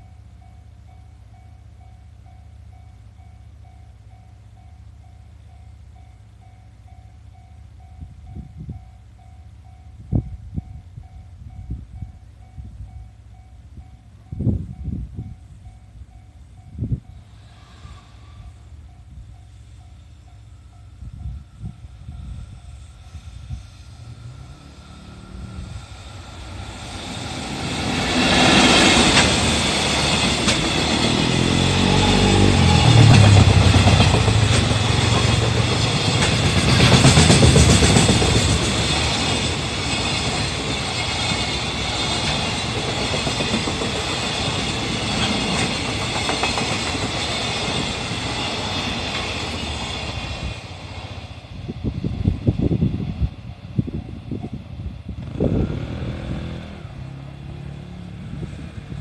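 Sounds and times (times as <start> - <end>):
electric locomotive motor whine: 12.6 - 59.0
freight wagons wheel noise: 24.2 - 53.3
wheels clacking over rail joints: 26.2 - 51.2.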